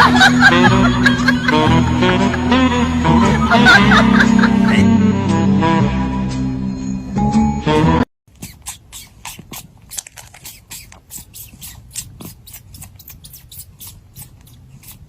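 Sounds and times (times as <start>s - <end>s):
pet chewing crunchily: 8.3s - 15.0s.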